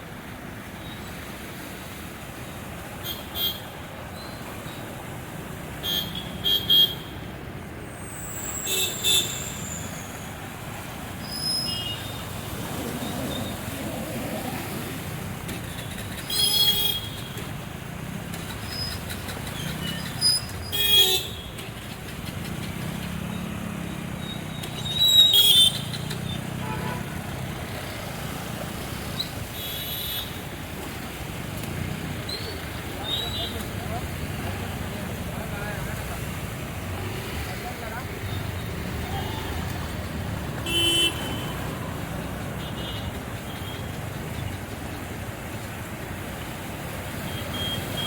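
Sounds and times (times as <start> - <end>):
road traffic: 0.0 - 48.0
vehicle horns honking: 5.8 - 7.2, 16.3 - 17.4, 20.7 - 21.6, 25.3 - 25.9, 26.6 - 27.3, 40.6 - 41.8, 42.6 - 43.9.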